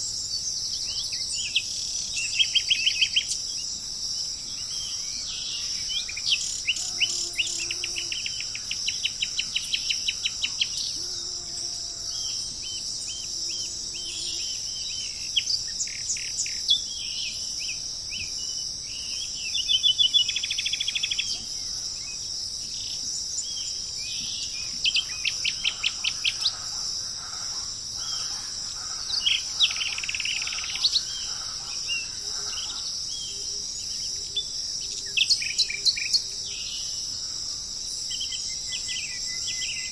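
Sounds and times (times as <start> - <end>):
high-pitched insect drone: 0.0 - 39.9
birds chirping and trilling: 12.1 - 37.3.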